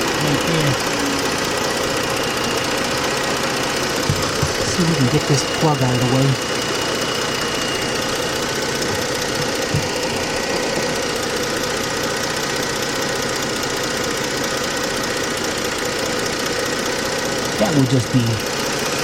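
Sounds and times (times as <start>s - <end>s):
car engine idling: 0.0s - 19.0s.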